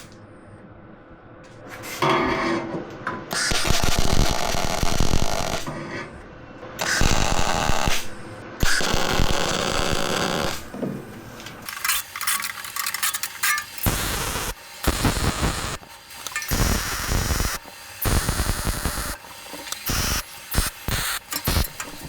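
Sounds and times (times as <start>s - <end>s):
handheld power tool bursts: 6.8s - 9.3s, 11.6s - 22.0s.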